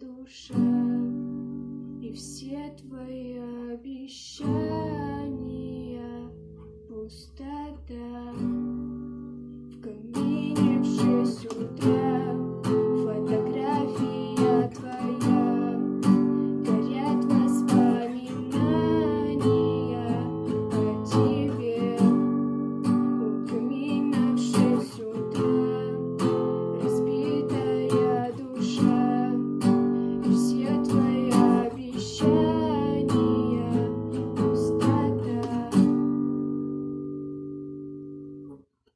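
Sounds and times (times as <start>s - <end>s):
acoustic guitar strumming chords: 8.4s - 38.6s.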